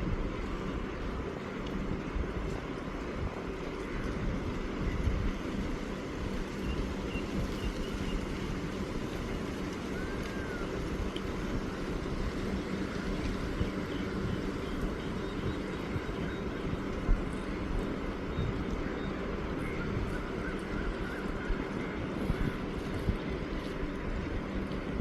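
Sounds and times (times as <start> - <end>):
low outdoor rumble: 0.0 - 25.0.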